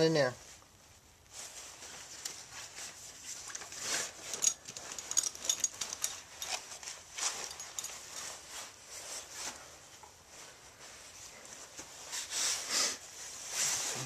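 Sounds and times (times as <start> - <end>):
small metal parts clicking: 4.3 - 6.6.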